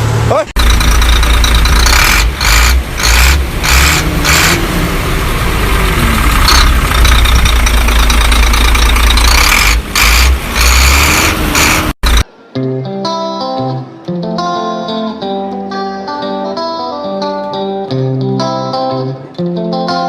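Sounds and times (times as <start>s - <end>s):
vehicle engine surging: 0.0s - 12.3s.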